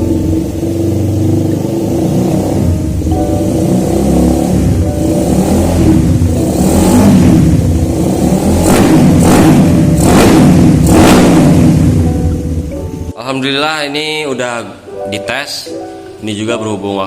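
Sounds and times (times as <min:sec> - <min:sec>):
motorcycle engine revving: 0:00.0 - 0:12.6.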